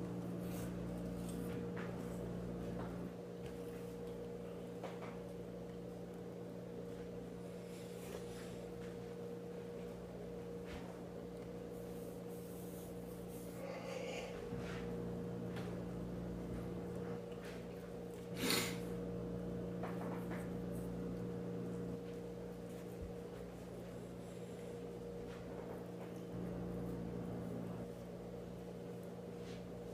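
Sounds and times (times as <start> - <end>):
steady low hum: 0.0 - 29.9
breaths: 13.5 - 14.7.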